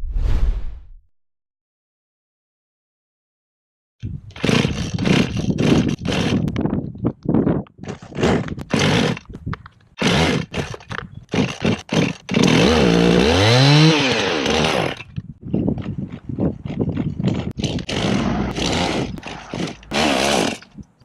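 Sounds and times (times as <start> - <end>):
chainsaw revving in bursts: 4.4 - 6.4, 8.2 - 9.2, 10.0 - 15.0, 17.3 - 20.7.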